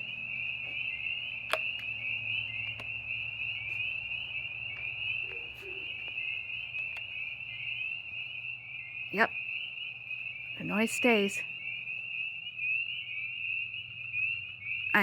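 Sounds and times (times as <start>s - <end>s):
frogs trilling chorus: 0.0s - 15.0s
faint clicks: 4.7s - 7.6s.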